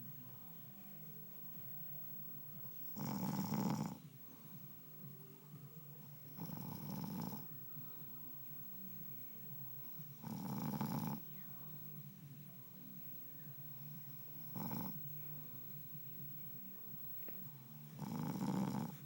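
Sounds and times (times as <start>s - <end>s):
man snoring: 2.9s - 4.0s, 6.2s - 7.5s, 10.2s - 11.3s, 14.4s - 15.0s, 17.8s - 19.0s.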